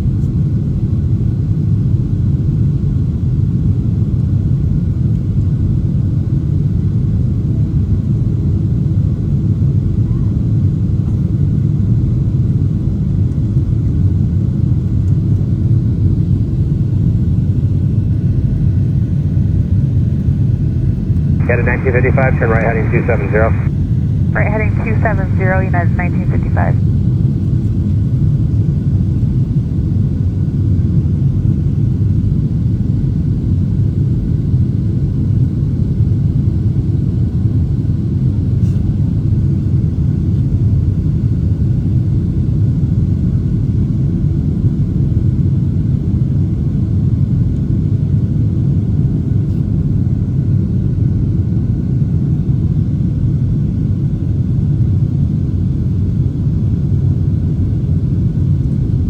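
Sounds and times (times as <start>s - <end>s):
jet engines at climb thrust: 21.4s - 23.7s, 24.4s - 26.8s.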